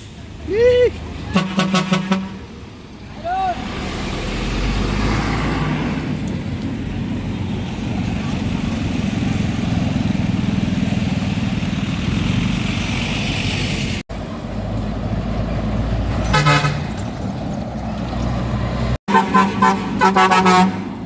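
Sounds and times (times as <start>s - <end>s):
vehicle engine and road rumble: 0.0s - 21.0s
vehicle horn honking: 1.3s - 2.5s, 16.2s - 16.9s, 19.1s - 20.9s.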